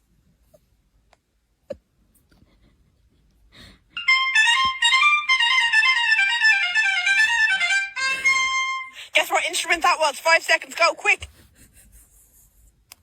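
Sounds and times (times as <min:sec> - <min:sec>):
high-pitched melodic instrument run: 0:04.0 - 0:09.1.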